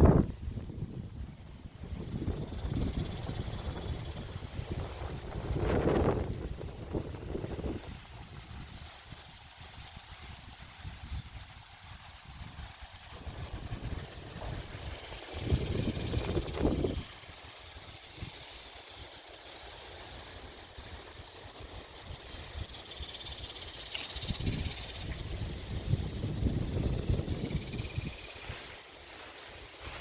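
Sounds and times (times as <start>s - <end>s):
wind buffeting microphone: 0.0s - 8.8s, 12.2s - 17.2s, 22.1s - 28.6s
high wind hiss: 0.0s - 30.0s.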